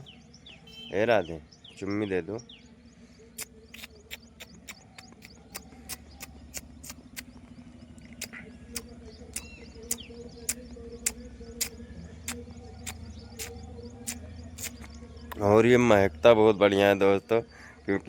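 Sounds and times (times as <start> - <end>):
faint bird chirps: 0.0 - 18.0
sharp clicks: 3.4 - 15.4.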